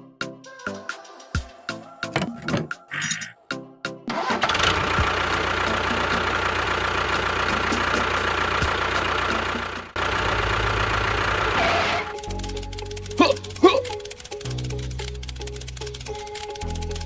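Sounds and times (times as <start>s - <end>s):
engine idling: 4.2s - 17.0s.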